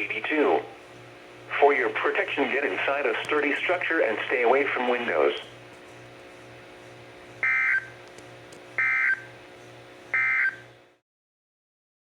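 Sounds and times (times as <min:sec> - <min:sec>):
faint radio hum and hiss: 0:00.0 - 0:08.8
screechy radio data tones: 0:01.5 - 0:05.6, 0:07.4 - 0:08.0, 0:08.8 - 0:09.3, 0:10.2 - 0:10.6.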